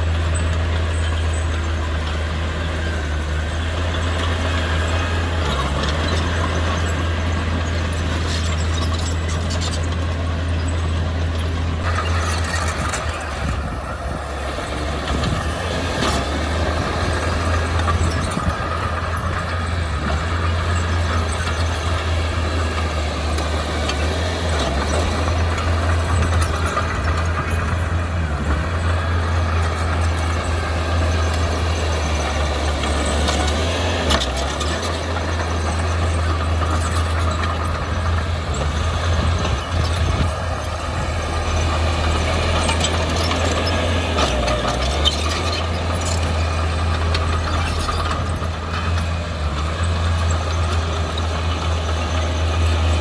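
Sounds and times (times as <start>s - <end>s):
diesel engine humming: 0.0s - 53.0s.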